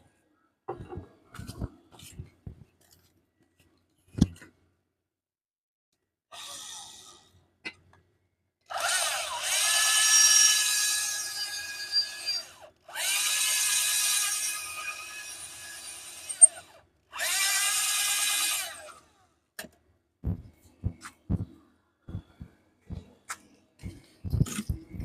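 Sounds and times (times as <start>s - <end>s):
electric drill boring metal: 8.7s - 19.1s
knocks and clicks: 20.2s - 25.0s.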